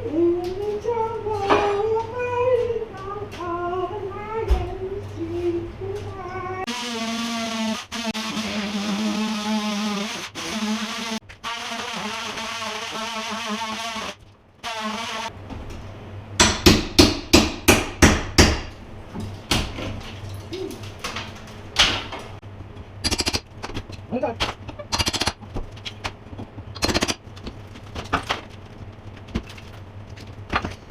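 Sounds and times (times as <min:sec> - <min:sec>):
hammer striking plaster wall: 0:16.4 - 0:18.7.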